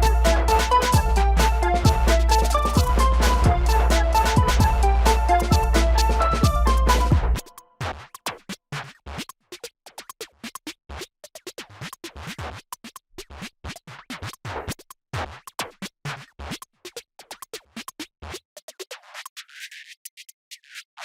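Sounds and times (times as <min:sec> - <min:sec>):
electronic music with stuttering cuts: 0:00.0 - 0:08.1.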